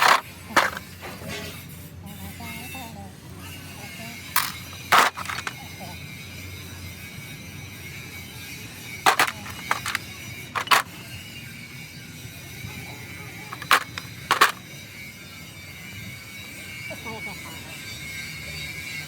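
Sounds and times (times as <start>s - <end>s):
tools knocking against metal: 4.4s - 5.6s, 9.1s - 10.0s, 10.6s - 10.9s.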